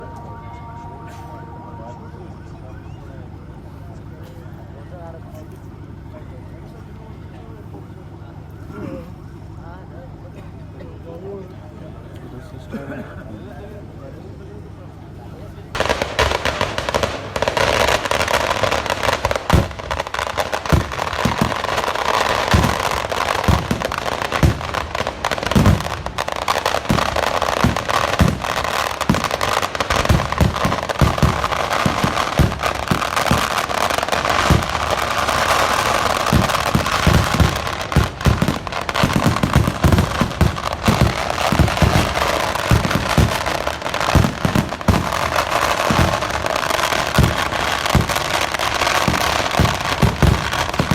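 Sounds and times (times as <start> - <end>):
firecrackers crackling: 15.7 - 50.9
deep firework booms: 15.8 - 50.9.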